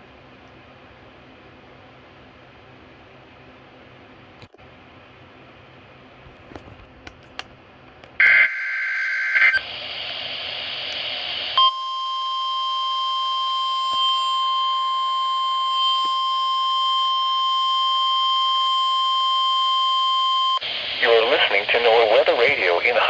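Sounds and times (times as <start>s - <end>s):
radio static with clicks: 6.3s - 11.6s, 20.6s - 23.0s
single-pitch warning alarm tone: 8.2s - 9.6s, 11.6s - 20.7s.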